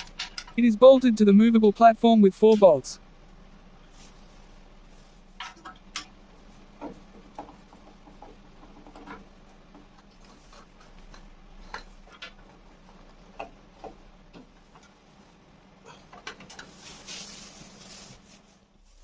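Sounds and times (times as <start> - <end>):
clicks and knocks of tools: 0.0 - 0.6, 5.4 - 6.2, 6.8 - 15.0, 16.0 - 16.8
faint steady hum: 0.0 - 19.0.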